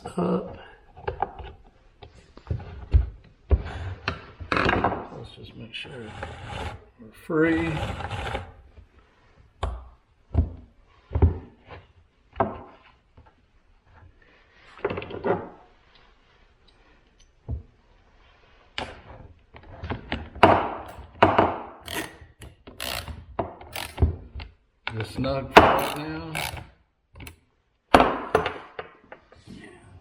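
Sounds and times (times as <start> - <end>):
chain rattling around bar: 21.9 - 24.0
chainsaw handling knocks: 25.6 - 26.5.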